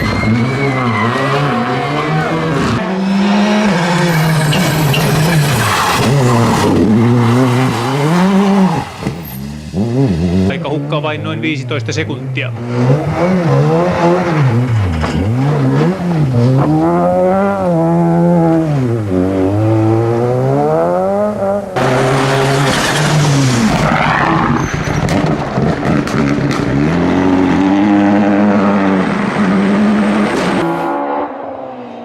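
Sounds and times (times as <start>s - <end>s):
rally car engine revving: 0.0s - 32.0s
tyres sliding on gravel: 21.8s - 24.9s.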